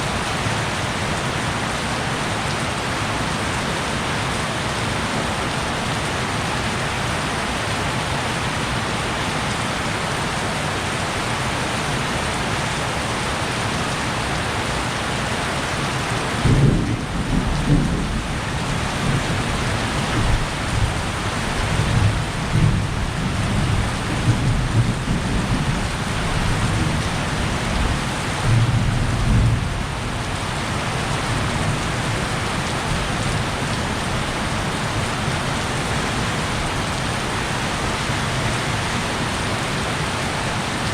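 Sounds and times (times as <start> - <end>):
heavy rain: 0.0 - 40.9
thunder rumbling: 16.4 - 30.2.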